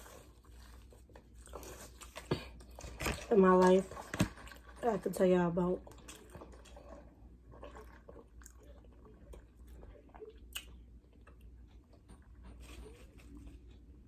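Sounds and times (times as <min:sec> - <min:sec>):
wet chewing sounds: 0:00.0 - 0:14.0
small mouth clicks: 0:10.5 - 0:10.8.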